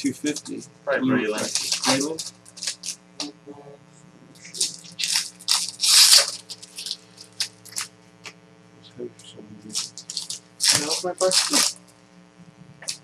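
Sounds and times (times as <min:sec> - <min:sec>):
faint steady hum: 0:00.0 - 0:13.0
cards crinkling and rustling: 0:01.3 - 0:03.0, 0:04.6 - 0:07.9, 0:09.7 - 0:11.8.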